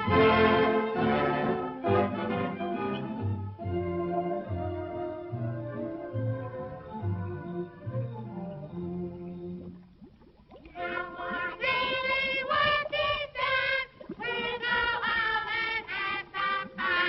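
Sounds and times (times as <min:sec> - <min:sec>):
orchestral music: 0:00.0 - 0:09.6
children's chorus singing: 0:10.8 - 0:17.0.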